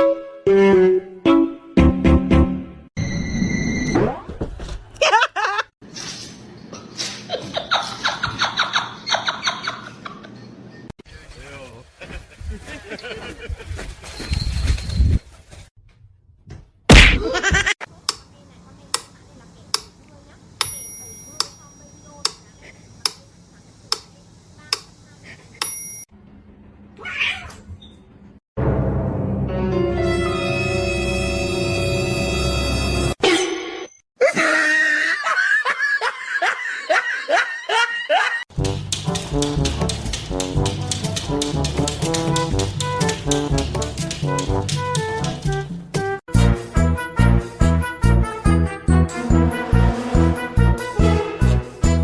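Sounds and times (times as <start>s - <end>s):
person laughing: 5.0s - 5.7s, 12.0s - 13.8s, 17.1s - 17.8s, 34.2s - 38.4s
cat meowing: 27.0s - 27.6s
loud music: 46.3s - 52.0s.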